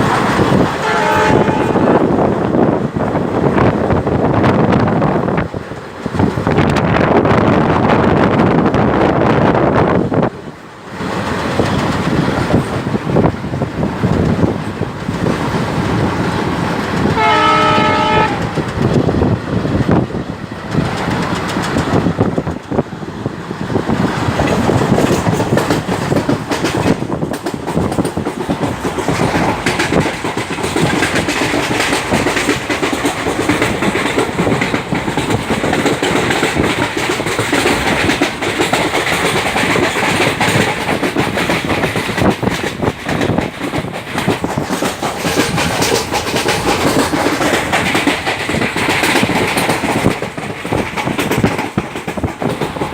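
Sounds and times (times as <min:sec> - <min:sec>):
train rumble and wheel clatter: 0:00.0 - 0:52.9
train horn: 0:00.8 - 0:02.1, 0:17.2 - 0:18.6.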